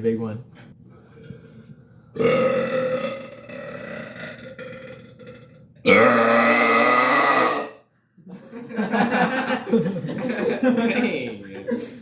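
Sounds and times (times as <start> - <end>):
man burping loudly: 2.2 - 7.8.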